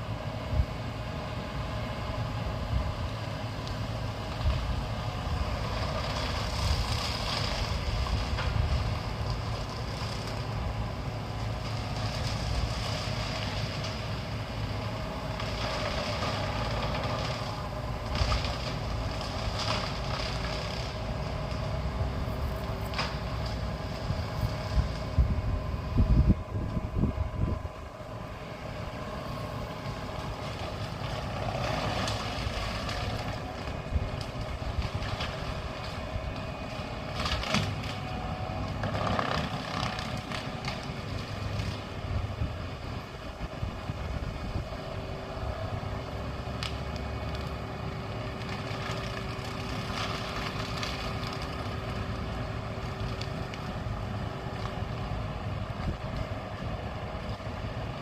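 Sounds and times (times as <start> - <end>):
large engine running: 0.0 - 58.0.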